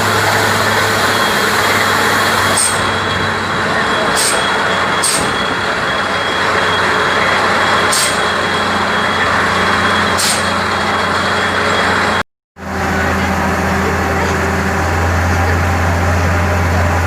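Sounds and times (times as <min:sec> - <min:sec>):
drilling rig engine drone: 0:00.0 - 0:17.0
short sharp high hisses: 0:10.2 - 0:10.5.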